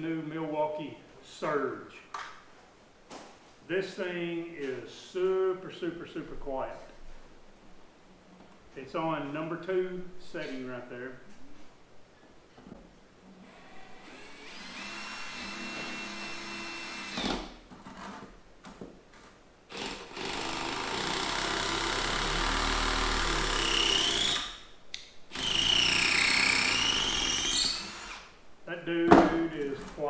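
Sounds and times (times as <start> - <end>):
impact driver whirring: 13.5 - 17.6, 19.7 - 24.6, 25.3 - 28.4.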